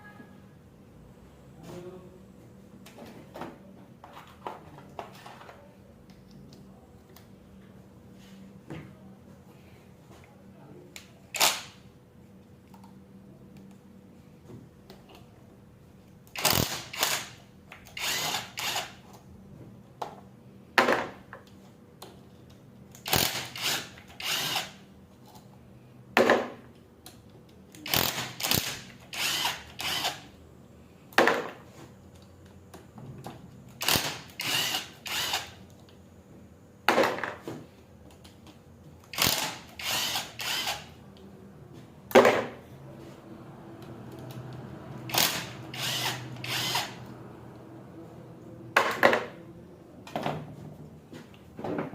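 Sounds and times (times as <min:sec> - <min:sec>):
power drill-driver bursts: 0:11.4 - 0:11.7, 0:16.4 - 0:19.0, 0:23.0 - 0:24.8, 0:27.8 - 0:30.2, 0:33.8 - 0:35.6, 0:39.1 - 0:40.9, 0:45.1 - 0:47.0.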